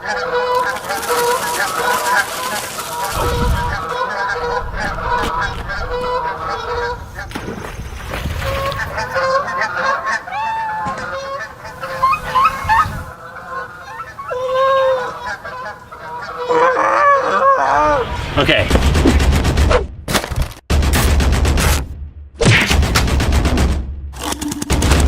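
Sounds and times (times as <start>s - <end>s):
geese honking: 0.0s - 18.2s
low rumble: 3.1s - 9.0s, 17.7s - 20.1s.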